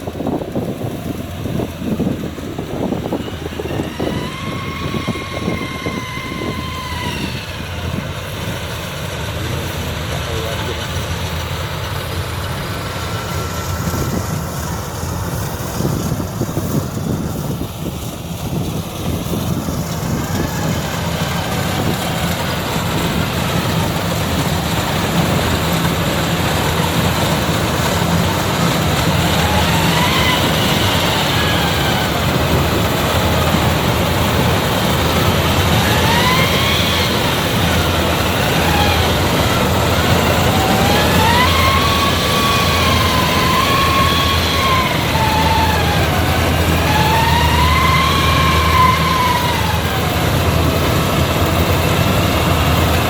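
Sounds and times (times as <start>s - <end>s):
combine harvester engine running: 0.0s - 53.0s
high rising and falling whistles: 2.9s - 8.7s, 20.1s - 33.9s, 34.5s - 51.0s.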